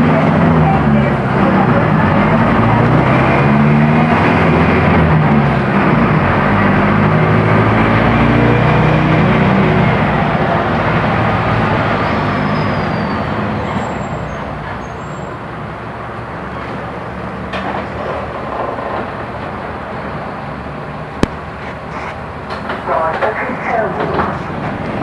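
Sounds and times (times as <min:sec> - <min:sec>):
bus diesel engine drone: 0:00.0 - 0:25.0.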